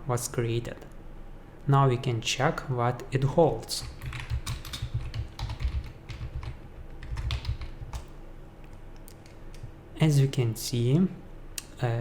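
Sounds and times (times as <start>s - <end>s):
typing on computer keyboard: 3.8s - 8.1s.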